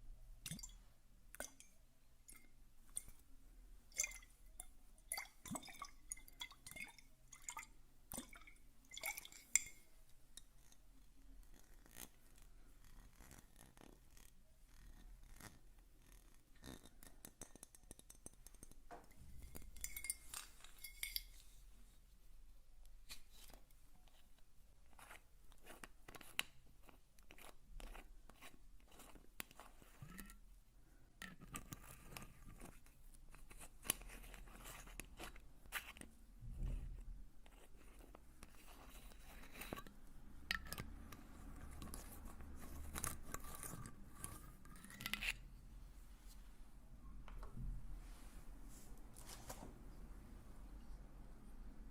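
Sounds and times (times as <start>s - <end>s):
crinkly scratching: 41.6s - 45.5s.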